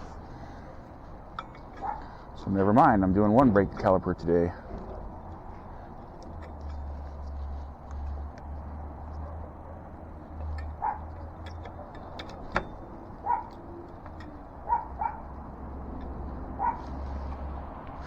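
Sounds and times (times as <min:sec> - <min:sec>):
dogs barking: 0:01.8 - 0:02.2, 0:10.6 - 0:11.9, 0:13.2 - 0:13.7, 0:14.6 - 0:15.4, 0:16.5 - 0:17.0.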